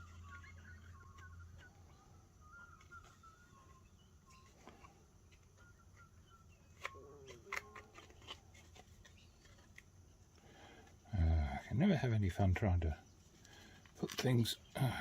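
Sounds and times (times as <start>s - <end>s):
cardboard game pieces clicking: 6.7s - 9.9s.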